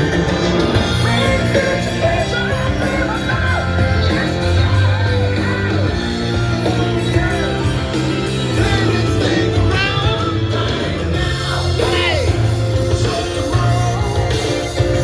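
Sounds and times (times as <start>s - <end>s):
rock song with singing: 0.0s - 15.0s.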